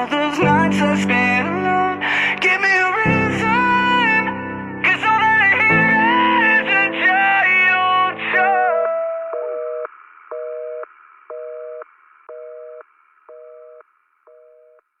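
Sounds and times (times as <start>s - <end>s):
telephone busy signal: 9.4s - 14.8s.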